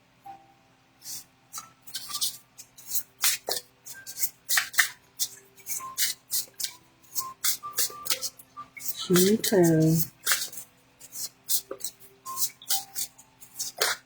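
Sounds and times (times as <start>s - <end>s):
cards being shuffled: 1.6s - 14.0s.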